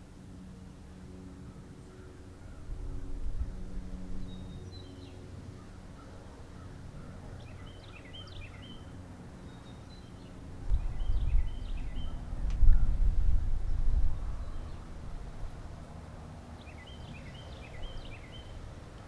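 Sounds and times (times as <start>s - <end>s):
songbirds chirping: 7.4s - 13.1s, 16.3s - 19.0s.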